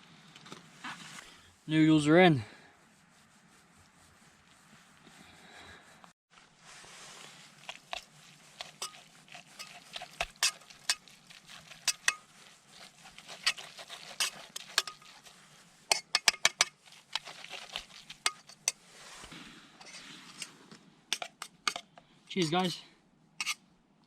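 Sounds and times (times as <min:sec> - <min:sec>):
metal utensil scraping metal pot: 0:07.6 - 0:20.5, 0:23.4 - 0:23.6.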